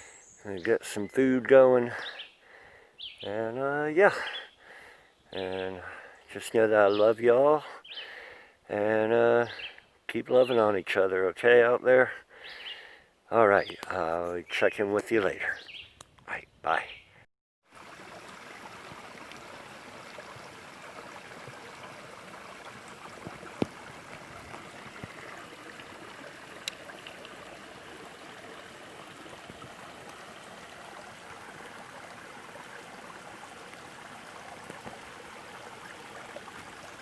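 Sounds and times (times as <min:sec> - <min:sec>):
stream water rushing: 0:17.7 - 0:37.0.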